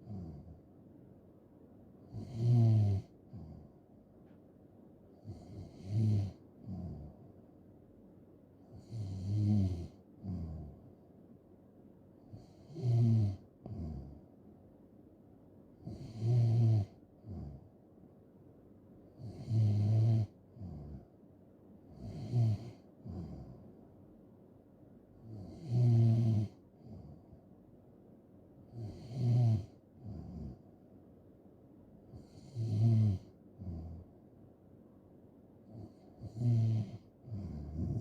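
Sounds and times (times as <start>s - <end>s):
person snoring: 0.0s - 0.6s, 2.1s - 3.7s, 5.2s - 7.2s, 8.8s - 10.8s, 12.3s - 14.2s, 15.8s - 17.6s, 19.2s - 21.0s, 22.0s - 23.6s, 25.2s - 27.2s, 28.7s - 30.6s, 32.2s - 34.0s, 35.7s - 38.0s.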